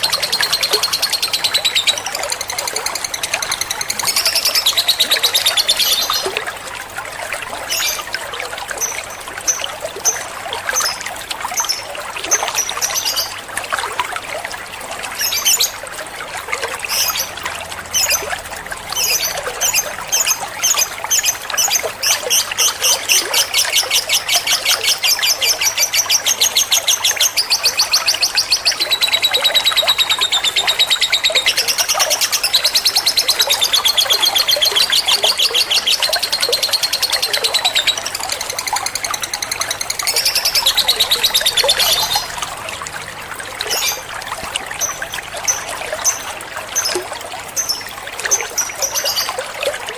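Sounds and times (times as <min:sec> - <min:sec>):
lovebird chirps: 0:39.0 - 0:42.4.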